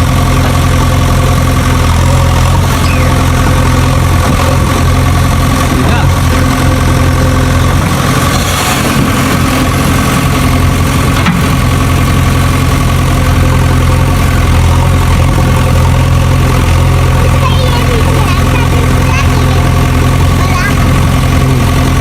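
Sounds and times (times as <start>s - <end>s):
tractor engine idling: 0.0s - 22.0s.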